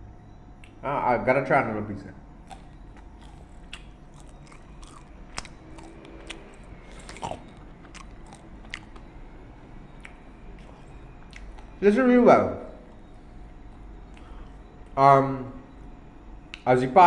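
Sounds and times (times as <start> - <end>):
person chewing crispy fried chicken: 2.4 - 9.2, 9.9 - 11.8, 12.8 - 15.0.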